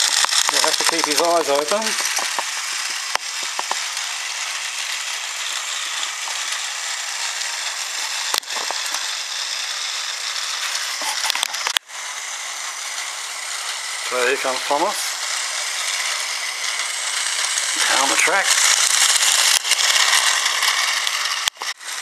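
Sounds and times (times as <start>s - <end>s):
sharp clicks: 0.0s - 4.0s
toy train gear whir and rattle: 0.0s - 22.0s.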